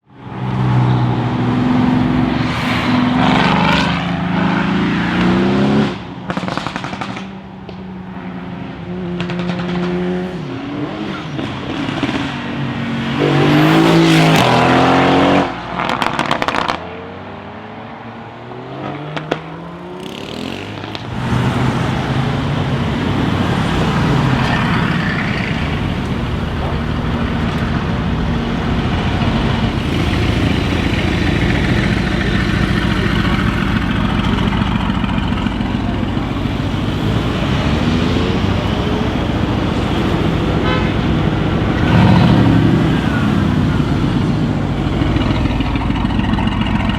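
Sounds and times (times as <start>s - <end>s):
car engine revving: 0.9s - 16.8s, 18.9s - 46.9s
exhaust crackles: 2.0s - 8.2s, 20.0s - 46.9s.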